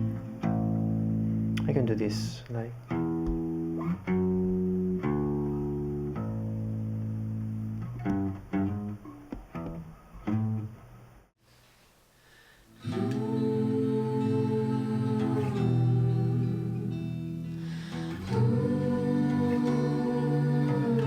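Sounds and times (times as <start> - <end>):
guitar plucked notes and chords: 0.0 - 10.9, 12.8 - 21.0
sustained chords of music: 12.8 - 21.0.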